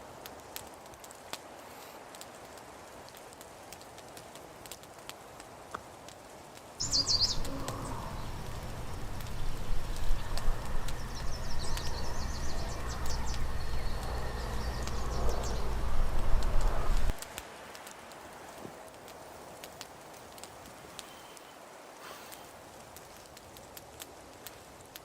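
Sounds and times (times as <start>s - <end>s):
small birds chirping: 6.8s - 17.2s
steady low rumble: 6.8s - 17.3s.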